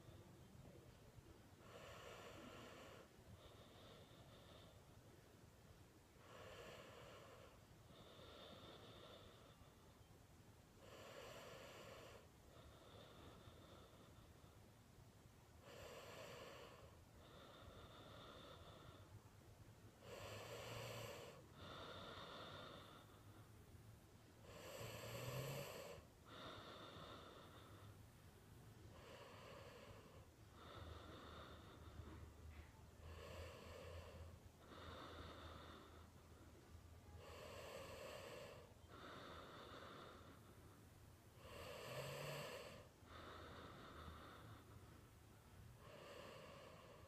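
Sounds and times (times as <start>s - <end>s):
person snoring faintly: 20.0s - 23.3s, 24.4s - 28.0s, 37.0s - 40.6s, 41.4s - 44.9s.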